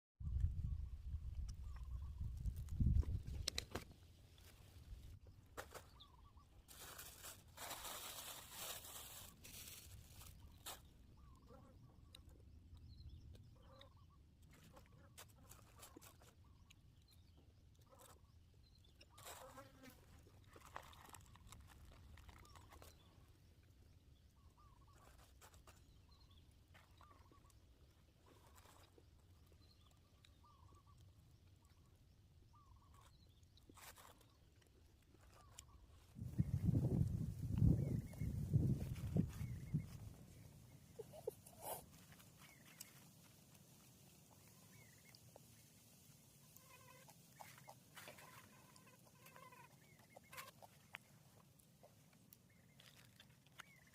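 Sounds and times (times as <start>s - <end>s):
rustling handling noises: 6.6s - 10.9s
bird chirps: 37.4s - 43.2s.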